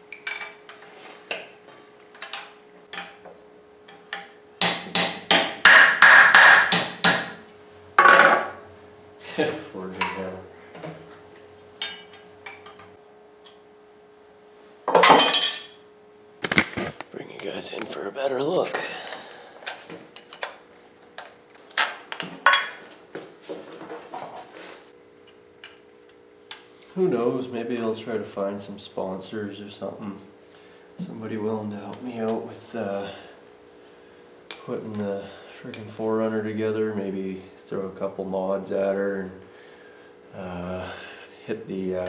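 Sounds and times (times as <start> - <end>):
hammer striking metal: 4.6 - 7.4
metal tools and parts clanking: 14.9 - 15.8, 21.6 - 23.1.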